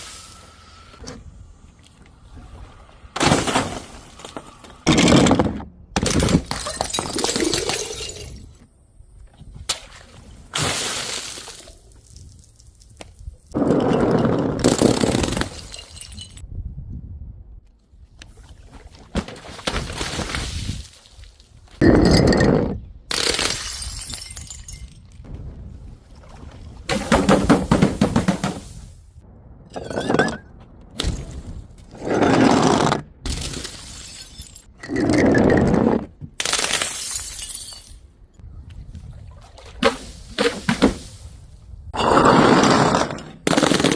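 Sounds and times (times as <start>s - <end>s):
glass bottles breaking: 6.0s - 8.5s, 14.8s - 16.4s, 23.2s - 25.2s, 33.3s - 34.7s, 36.4s - 38.1s
glass shattering: 23.4s - 25.1s, 33.3s - 34.7s, 36.5s - 38.0s.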